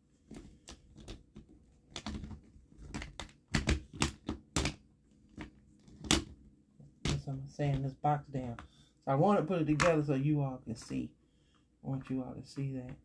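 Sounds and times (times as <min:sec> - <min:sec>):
resin pieces clicking on hard surface: 0:00.3 - 0:04.8.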